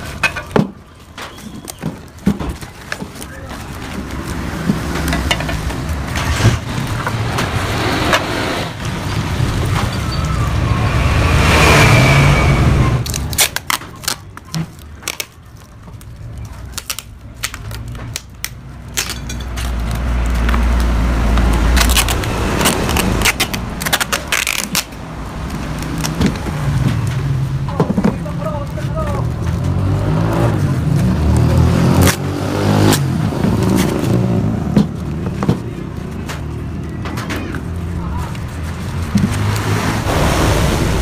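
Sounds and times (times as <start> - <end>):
motorcycle engine revving: 29.3 - 35.2.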